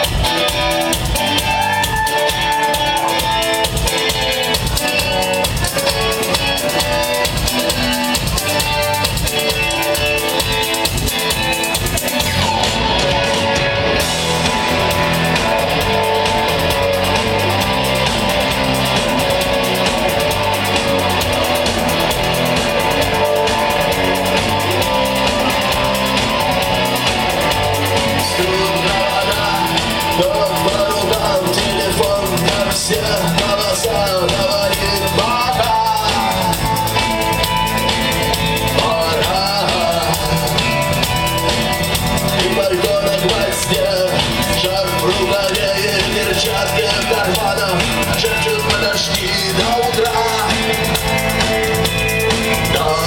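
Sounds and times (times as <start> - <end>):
drum kit: 0.0 - 53.0
electric guitars: 0.0 - 53.0.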